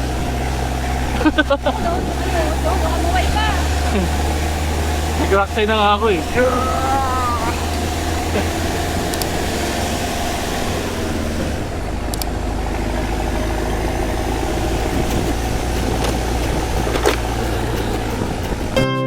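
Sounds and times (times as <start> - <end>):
vehicle engine running: 0.0 - 19.0
light clicks: 9.1 - 9.4, 12.0 - 12.4.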